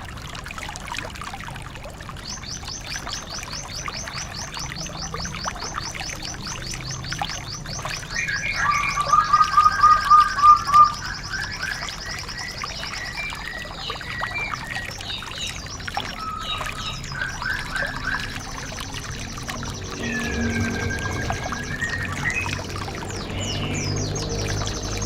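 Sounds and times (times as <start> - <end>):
bird chirps and whistles: 8.1 - 14.8
loud low repeated bird notes: 16.2 - 25.0.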